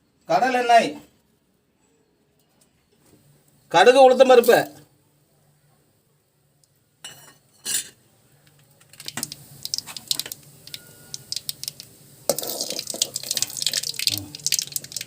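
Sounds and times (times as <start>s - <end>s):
seeds popping in hot oil: 8.4s - 15.0s.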